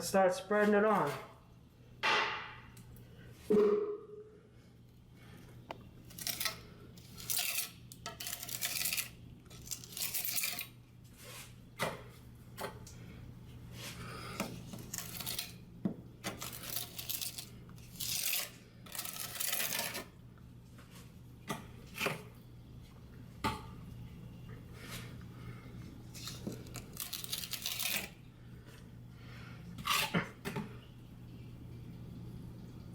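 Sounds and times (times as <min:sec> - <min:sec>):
grout float scraping tiles: 0:06.0 - 0:12.8, 0:13.7 - 0:15.6, 0:16.2 - 0:20.2, 0:20.9 - 0:22.4, 0:26.1 - 0:28.2, 0:29.8 - 0:30.5.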